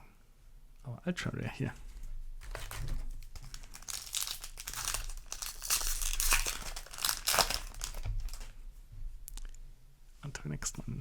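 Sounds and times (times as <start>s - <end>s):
foil wrapper tearing: 2.4s - 8.5s
foil wrapper crinkling: 2.4s - 8.6s.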